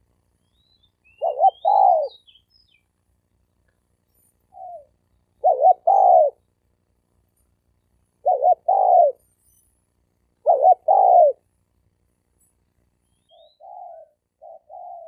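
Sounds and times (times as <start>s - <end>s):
dove cooing: 1.2s - 2.2s, 4.5s - 6.4s, 8.2s - 9.2s, 10.4s - 11.4s, 13.3s - 15.0s.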